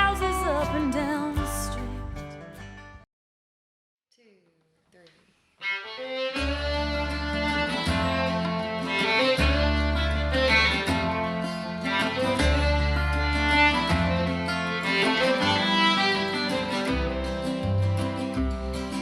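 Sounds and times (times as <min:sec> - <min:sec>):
bass line: 0:00.0 - 0:03.0, 0:06.4 - 0:19.0
guitar: 0:00.0 - 0:03.0, 0:05.6 - 0:19.0
fiddle melody: 0:05.6 - 0:19.0.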